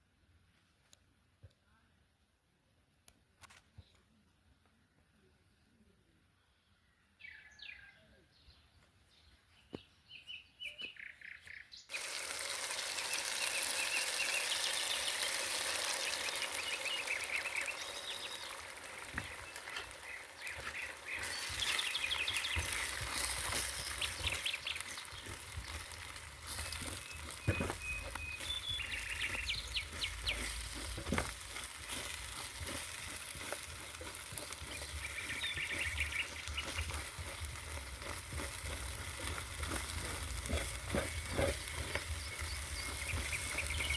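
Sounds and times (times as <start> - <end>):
small birds chirping: 5.2 - 43.9
frying sizzle in hot pan: 11.9 - 43.9.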